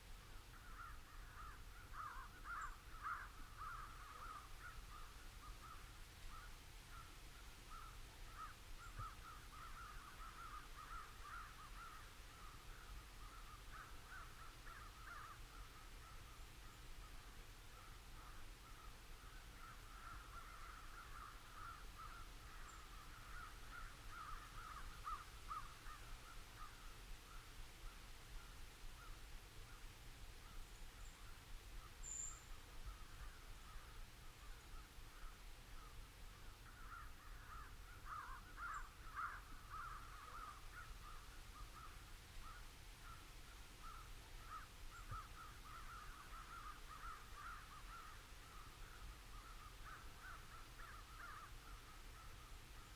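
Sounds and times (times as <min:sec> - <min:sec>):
crows cawing: 0:00.5 - 0:07.1, 0:07.7 - 0:16.2, 0:17.7 - 0:26.8, 0:36.6 - 0:43.2, 0:43.8 - 0:52.4.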